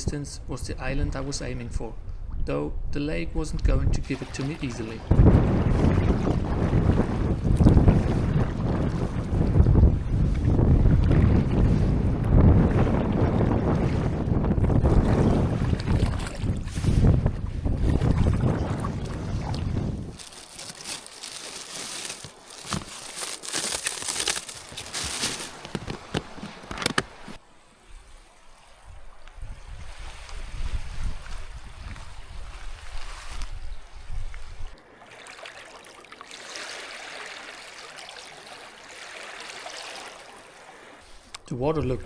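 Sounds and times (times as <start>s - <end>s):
wind buffeting microphone: 0.0s - 27.3s, 28.8s - 34.8s
water splashing and trickling: 3.9s - 11.9s, 14.6s - 27.4s, 28.2s - 41.3s.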